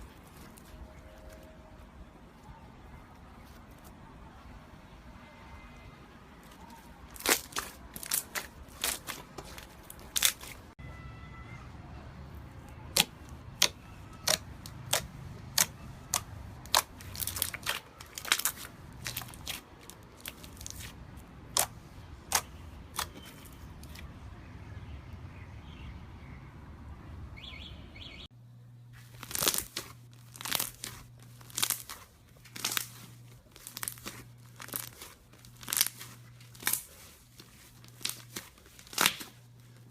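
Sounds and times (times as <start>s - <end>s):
slime popping and crackling: 7.1s - 10.7s, 12.9s - 24.0s, 29.0s - 39.5s.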